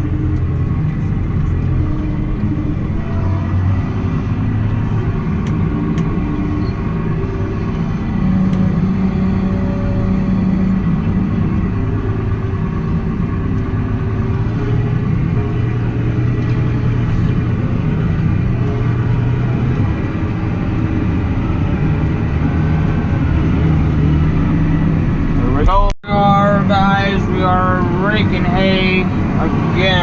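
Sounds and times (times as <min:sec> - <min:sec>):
vehicle engine driving: 0:00.0 - 0:30.0.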